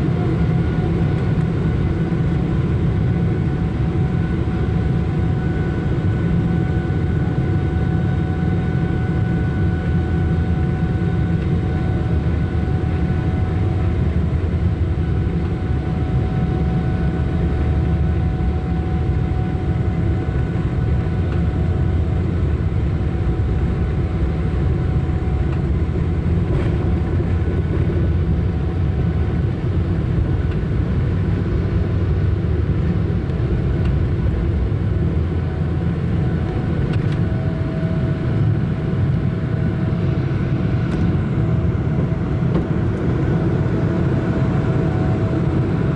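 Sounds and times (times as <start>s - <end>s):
engine fans whining: 0.0s - 45.9s
jet engine rumble in cabin: 0.0s - 45.9s.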